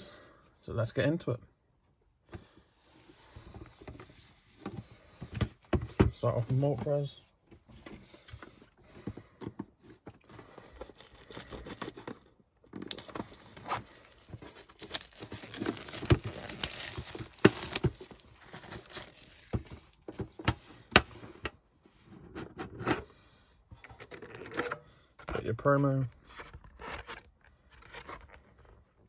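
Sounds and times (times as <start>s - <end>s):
plastic wrap crackling: 12.8s - 19.6s.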